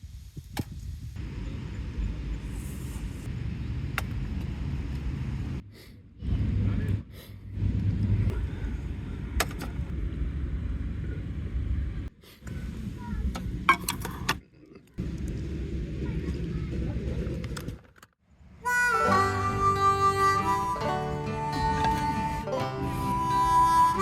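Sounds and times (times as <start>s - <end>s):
wind rumble on microphone: 0.0s - 5.6s, 6.2s - 13.7s
road noise: 1.2s - 14.4s, 15.0s - 24.0s.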